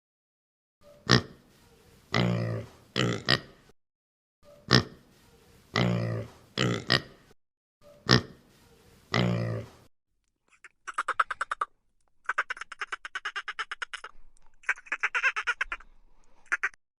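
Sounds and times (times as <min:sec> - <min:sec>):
pig grunting and oinking: 0:01.0 - 0:01.4, 0:02.1 - 0:03.6, 0:04.6 - 0:05.0, 0:05.7 - 0:07.3, 0:08.0 - 0:08.4, 0:09.1 - 0:09.9.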